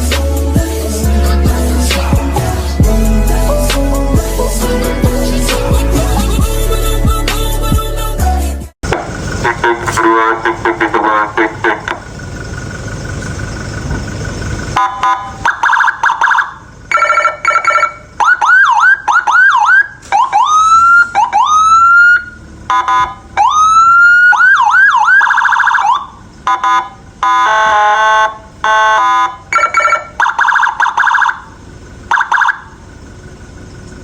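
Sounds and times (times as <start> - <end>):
electronic police siren: 8.9 - 32.8
blaring multi-tone horn: 26.5 - 30.4.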